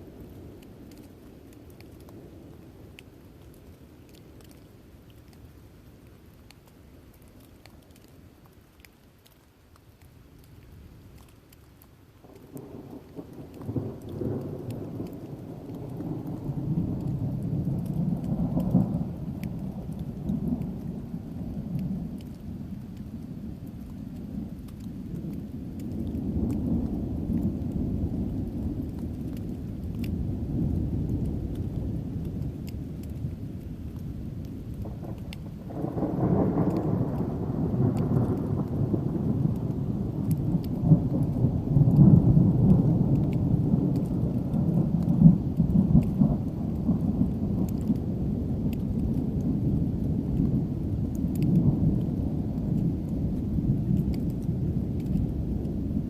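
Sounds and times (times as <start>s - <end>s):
raindrop ticks: 0.0s - 56.0s
thunder rolling: 34.8s - 54.0s.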